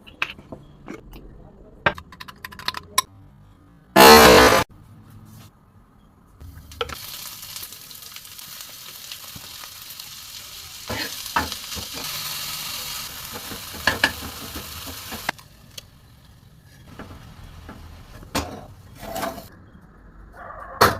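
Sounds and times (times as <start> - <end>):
omelette sizzling in a pan: 6.8 - 15.4.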